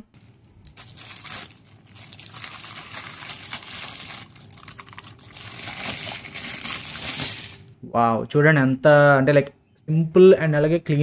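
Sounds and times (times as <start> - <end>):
plastic wrapping crinkling: 0.0 - 7.8.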